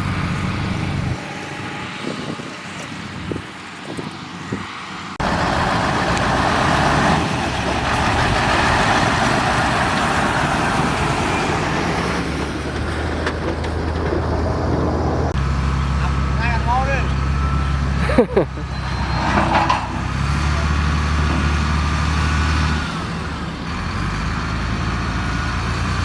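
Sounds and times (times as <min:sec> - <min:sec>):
loud rushing noise: 0:00.0 - 0:15.7
diesel machinery engine drone: 0:00.0 - 0:26.0.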